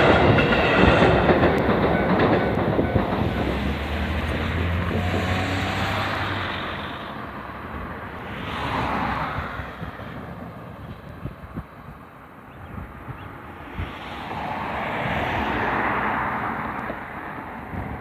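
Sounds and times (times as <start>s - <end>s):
vehicle engine humming: 1.3s - 8.2s
car passing by: 3.2s - 10.8s, 13.6s - 18.0s.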